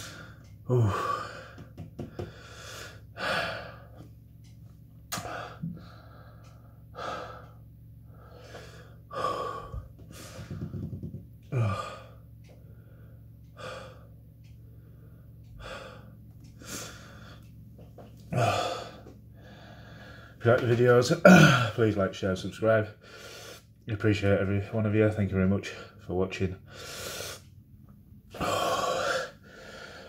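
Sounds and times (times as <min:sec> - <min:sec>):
man groaning: 0:00.7 - 0:01.3, 0:11.5 - 0:12.1, 0:18.3 - 0:18.9.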